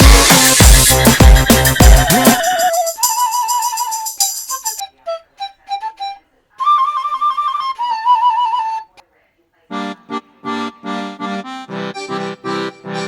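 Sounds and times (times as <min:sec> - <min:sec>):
loud beat-driven music: 0:00.0 - 0:04.8
solo melody with vibrato: 0:09.8 - 0:13.0.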